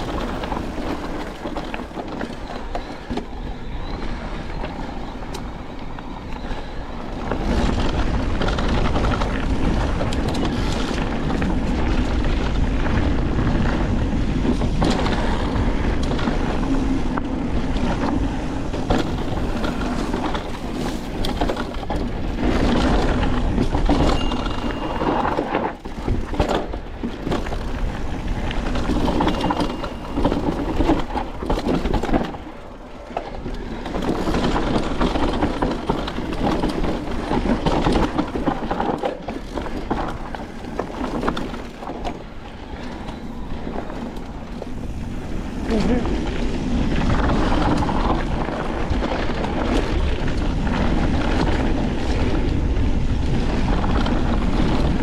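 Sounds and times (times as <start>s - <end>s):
wind buffeting microphone: 0.0s - 55.0s
short high squeaks: 24.0s - 25.5s, 29.2s - 30.4s.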